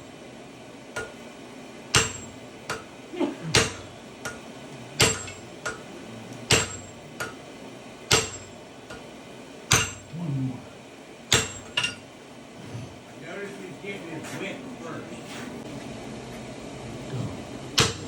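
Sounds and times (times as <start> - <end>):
hammer ringing on anvil: 2.0 - 2.8, 5.0 - 5.8, 6.5 - 7.4, 8.1 - 8.5, 9.7 - 10.1, 11.3 - 12.0.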